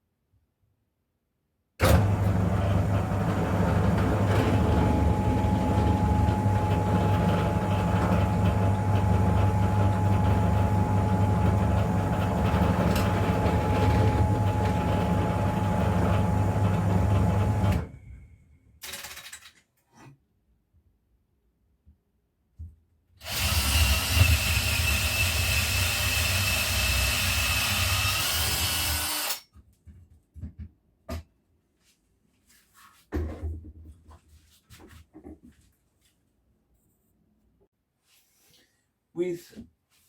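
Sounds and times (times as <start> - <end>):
drill press drilling wood: 1.8 - 17.9, 23.2 - 29.4.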